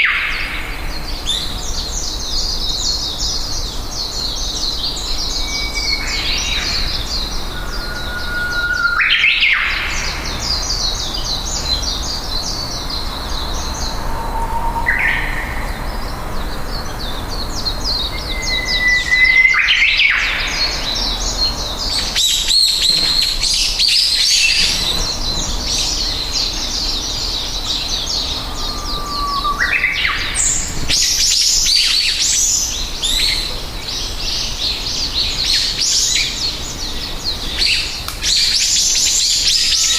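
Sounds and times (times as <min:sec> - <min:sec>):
small birds chirping and twittering: 0:00.0 - 0:39.9
upward sweeping bird calls: 0:05.3 - 0:11.8, 0:12.8 - 0:33.5.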